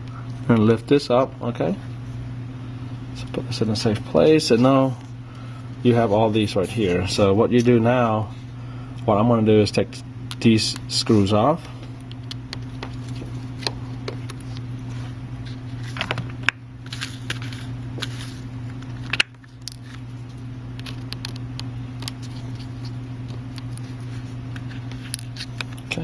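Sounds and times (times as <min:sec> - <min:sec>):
steady electrical hum: 0:00.0 - 0:26.0.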